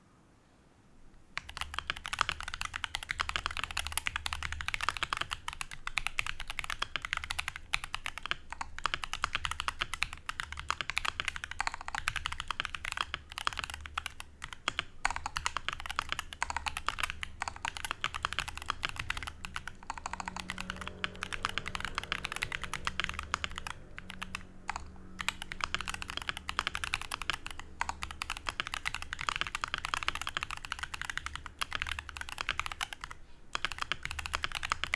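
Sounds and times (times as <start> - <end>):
fast mechanical keyboard typing: 1.4 - 34.9.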